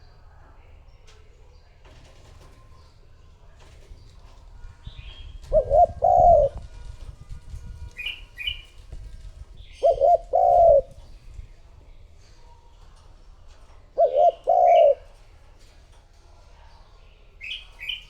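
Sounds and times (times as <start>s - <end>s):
dove cooing: 4.8s - 6.9s, 7.8s - 11.2s, 13.9s - 15.4s.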